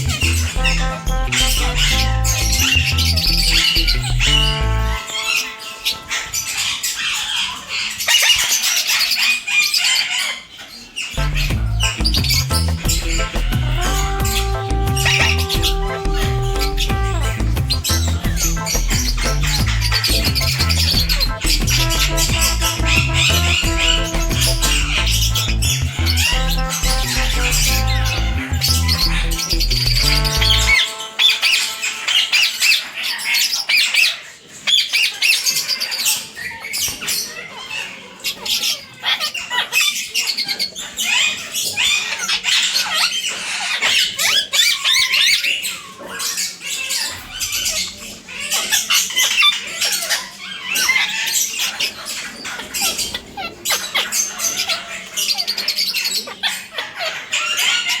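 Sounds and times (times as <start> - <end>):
parakeets squawking: 0.0 - 58.0.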